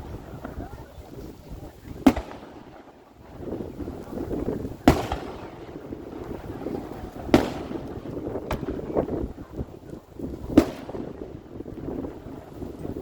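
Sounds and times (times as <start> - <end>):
fireworks exploding: 0.0 - 13.0
small firework pop: 2.0 - 2.7, 7.3 - 9.2.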